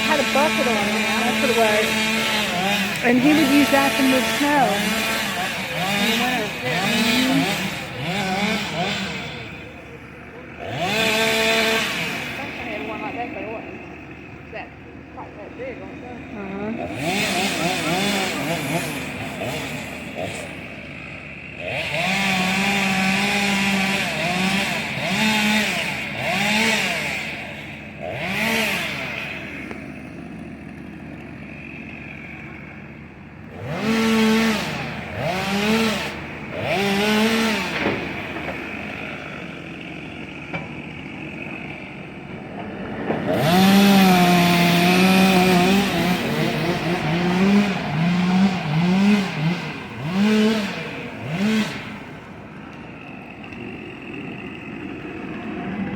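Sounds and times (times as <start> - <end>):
chainsaw cutting wood: 0.0 - 55.9.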